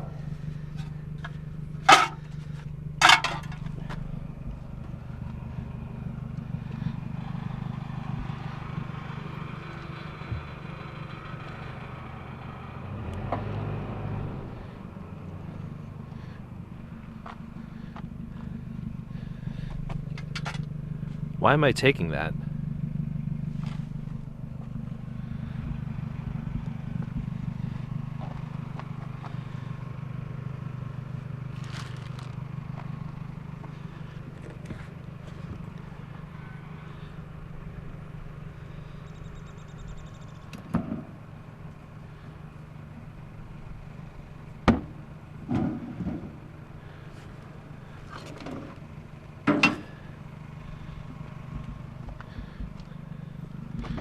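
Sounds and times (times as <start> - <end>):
car running hum: 0.0 - 54.0
sharp knocks and clunks: 40.6 - 41.2, 44.6 - 46.4, 49.4 - 50.0.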